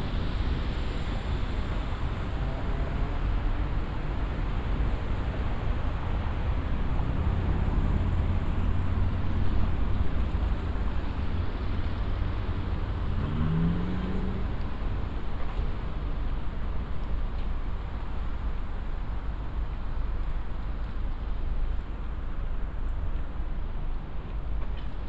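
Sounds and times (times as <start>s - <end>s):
low rumble of passing cars: 0.0s - 25.0s
vehicle engine speeding up: 12.9s - 14.6s.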